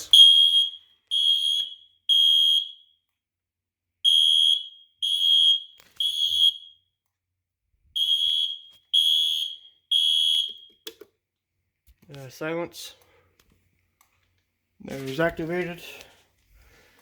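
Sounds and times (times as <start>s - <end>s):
fire alarm beeping: 0.0s - 3.1s, 4.0s - 7.0s, 7.9s - 10.9s.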